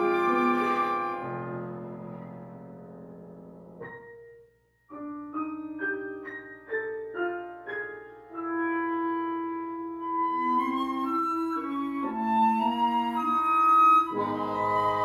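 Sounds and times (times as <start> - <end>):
wind quintet playing classical music: 0.0 - 2.4, 8.3 - 15.0.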